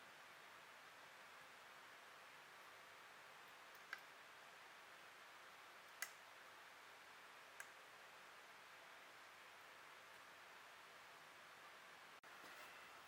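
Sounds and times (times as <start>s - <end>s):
low steady hiss: 0.0s - 13.0s
faint sharp clicks: 5.9s - 6.2s, 7.6s - 7.8s.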